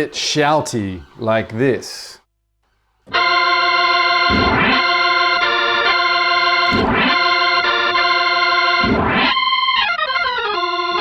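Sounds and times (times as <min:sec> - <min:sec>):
organ playing sustained chords: 0:03.1 - 0:11.0.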